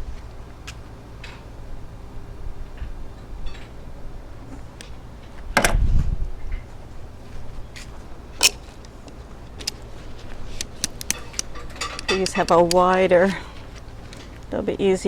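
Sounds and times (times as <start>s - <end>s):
handling knocks and clicks: 7.8s - 14.5s.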